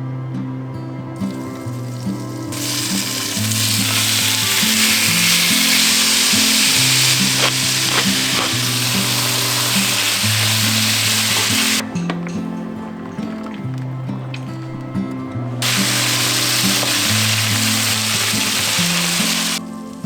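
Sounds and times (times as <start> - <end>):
background music: 0.0 - 20.0
food sizzling in frying pan: 1.2 - 11.8, 15.6 - 19.6
utensil clicks stirring: 2.6 - 19.1.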